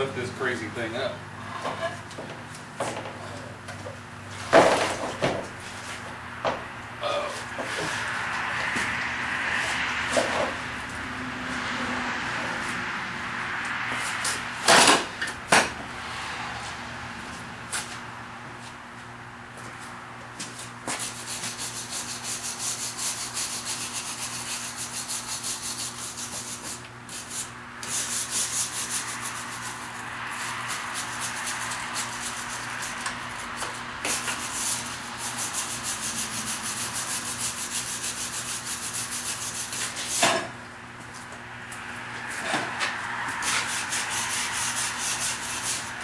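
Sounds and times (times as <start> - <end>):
wire brush scrubbing rusty metal: 20.9 - 40.6, 41.7 - 46.0.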